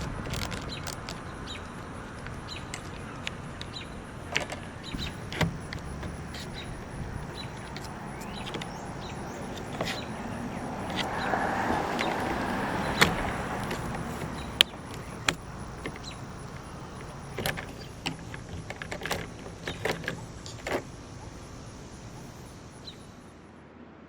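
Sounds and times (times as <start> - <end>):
plastic clips clicking: 0.0 - 4.7.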